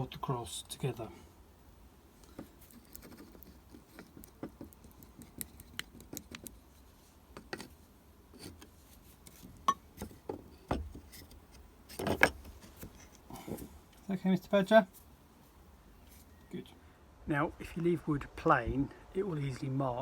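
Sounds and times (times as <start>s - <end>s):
wooden pieces tapping and clicking: 2.3s - 6.6s.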